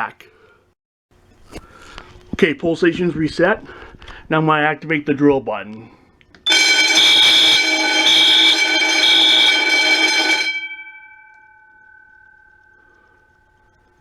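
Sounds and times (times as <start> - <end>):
fire alarm bell ringing: 6.4 - 14.0
fire alarm horn pulses: 6.4 - 14.0.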